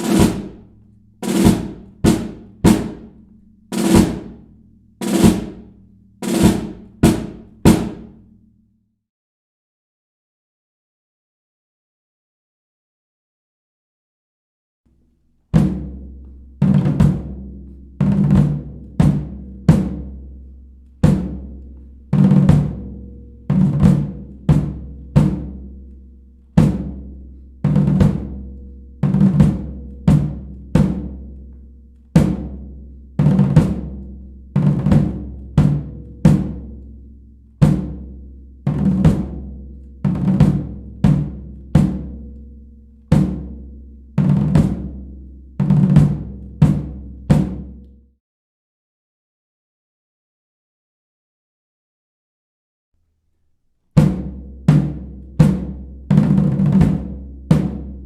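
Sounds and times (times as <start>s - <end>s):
drums playing a cadence: 0.0s - 8.2s.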